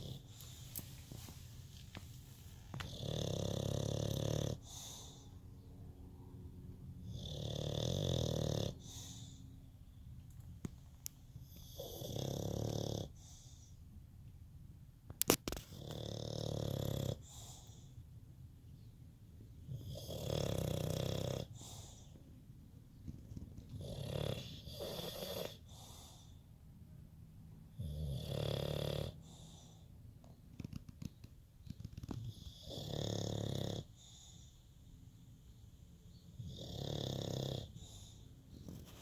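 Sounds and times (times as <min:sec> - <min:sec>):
loud snoring: 0:00.0 - 0:00.3, 0:02.8 - 0:05.2, 0:07.0 - 0:09.2, 0:11.4 - 0:13.2, 0:15.8 - 0:17.5, 0:19.7 - 0:21.8, 0:23.7 - 0:25.7, 0:27.8 - 0:29.6, 0:32.2 - 0:34.2, 0:36.4 - 0:38.1
quiet breathing: 0:37.2 - 0:39.0.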